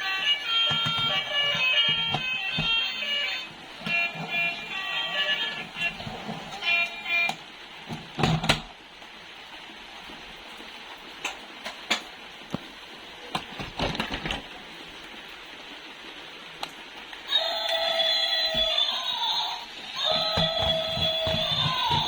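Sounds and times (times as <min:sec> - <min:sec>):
background music: 0:00.0 - 0:07.4.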